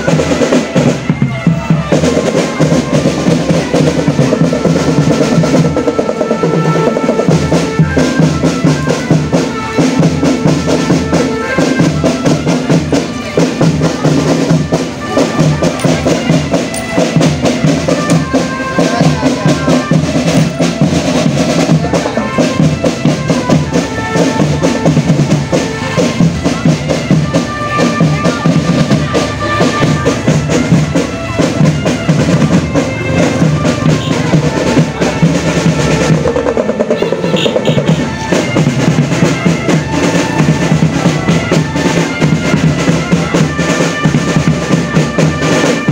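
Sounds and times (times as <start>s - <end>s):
snare drum rolls: 0.0s - 45.9s
melody of short held notes: 15.2s - 17.3s.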